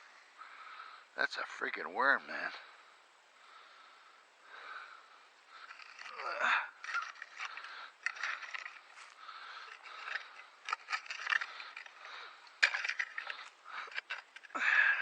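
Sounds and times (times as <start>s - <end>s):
digging through soil: 5.5s - 15.0s.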